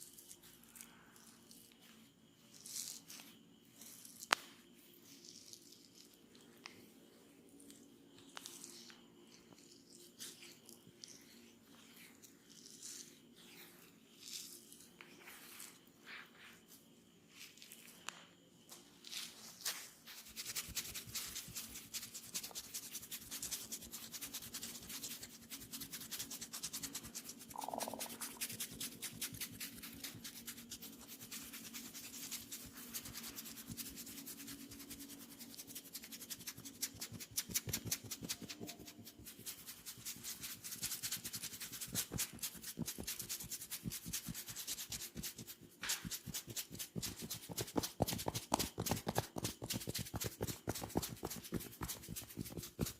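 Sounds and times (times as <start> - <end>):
hands rubbing oiled skin: 19.2 - 52.9.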